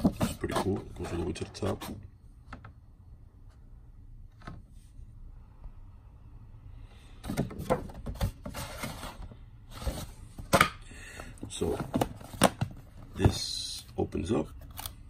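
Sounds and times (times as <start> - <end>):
cardboard box rustling and scraping: 7.6 - 10.2.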